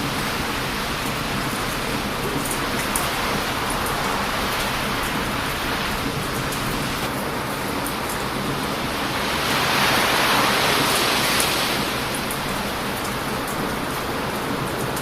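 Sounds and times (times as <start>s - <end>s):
bonfire crackling: 0.0s - 14.2s
ocean surf washing: 0.0s - 15.0s
wave breaking: 8.5s - 13.4s.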